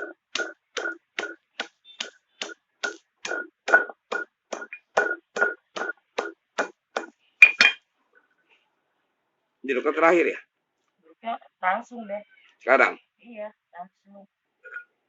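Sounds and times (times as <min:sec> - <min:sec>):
pestle pounding: 0:00.0 - 0:07.8.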